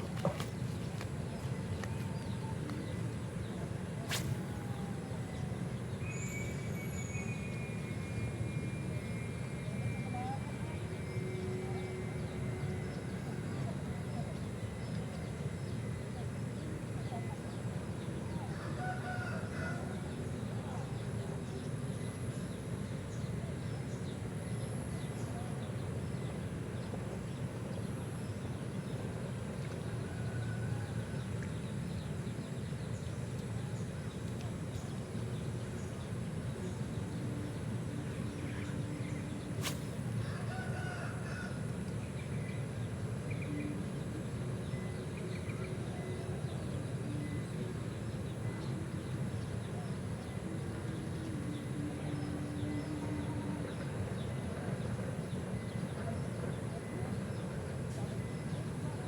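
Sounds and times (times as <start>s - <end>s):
sharp click: 4.1s - 4.4s.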